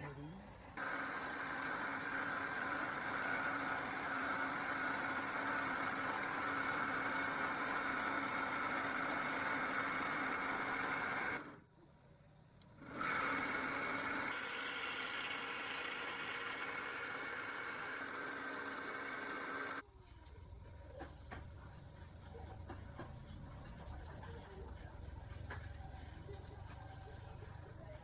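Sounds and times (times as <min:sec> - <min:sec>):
woodworking power tool whirring: 0:00.0 - 0:11.7, 0:12.6 - 0:19.8.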